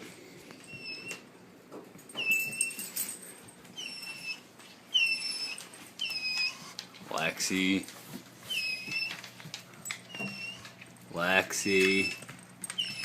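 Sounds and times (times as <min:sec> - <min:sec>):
dog whining: 0:00.6 - 0:01.3, 0:02.2 - 0:03.0, 0:03.7 - 0:07.0, 0:08.4 - 0:11.0, 0:11.8 - 0:13.0.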